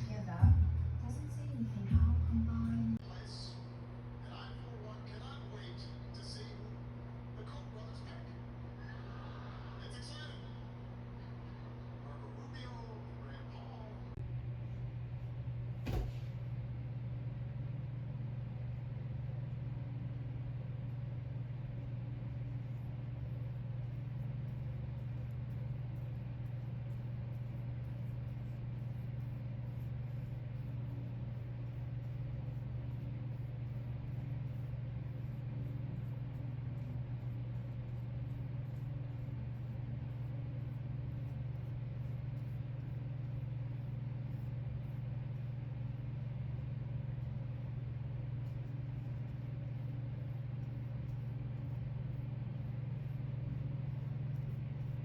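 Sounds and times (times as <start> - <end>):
low machine hum: 0.0 - 55.0.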